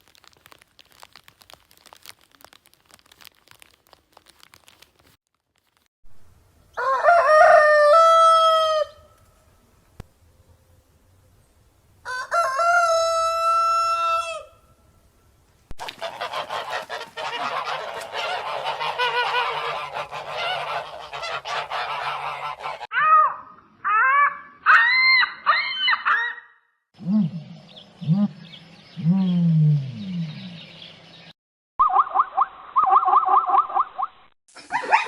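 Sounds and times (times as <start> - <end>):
geese honking: 15.8 - 22.9.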